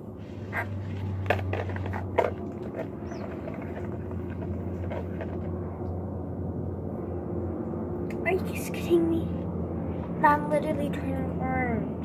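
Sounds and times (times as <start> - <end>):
steady low hum: 0.0 - 12.0
objects clicking and knocking: 0.9 - 5.5.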